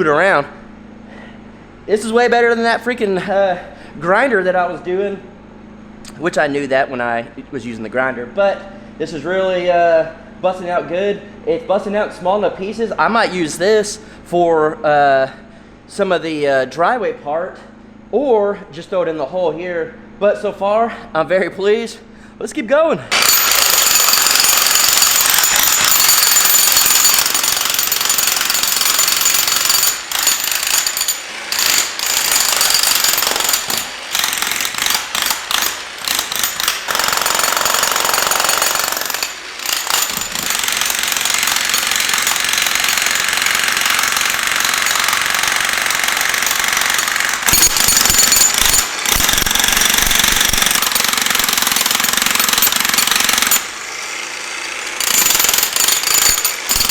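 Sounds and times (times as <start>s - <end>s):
demolition hammer breaking concrete: 23.1s - 56.9s.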